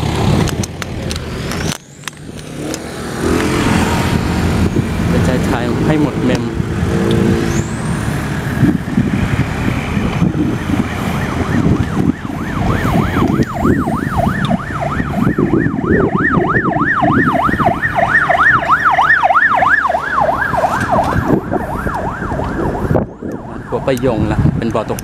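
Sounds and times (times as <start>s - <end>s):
electronic siren yelping: 9.8s - 24.1s.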